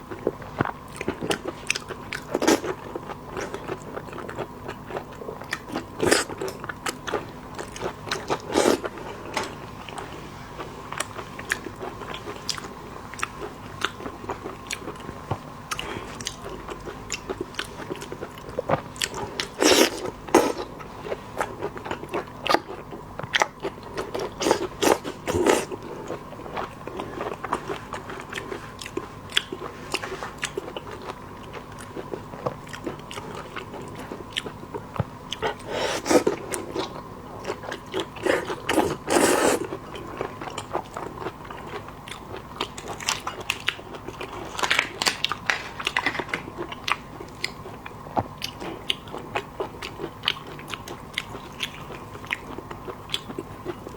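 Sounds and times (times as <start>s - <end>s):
crunching and chewing food: 0.0s - 53.9s.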